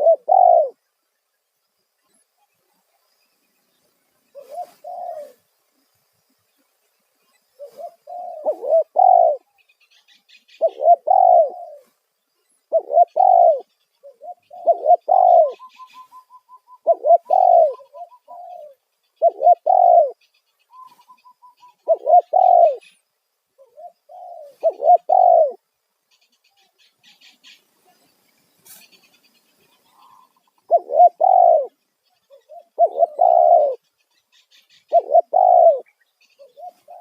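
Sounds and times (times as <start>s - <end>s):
dove cooing: 0.0s - 0.8s, 4.3s - 5.4s, 7.5s - 12.0s, 12.7s - 23.0s, 23.6s - 25.6s, 29.8s - 33.8s, 34.6s - 37.0s
faint small bird chirps: 0.0s - 37.0s.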